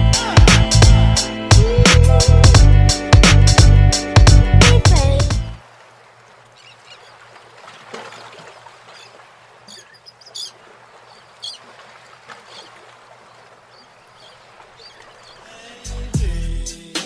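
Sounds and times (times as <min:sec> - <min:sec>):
faint bird chirps: 0:06.5 - 0:07.2, 0:08.9 - 0:11.8, 0:12.4 - 0:15.5.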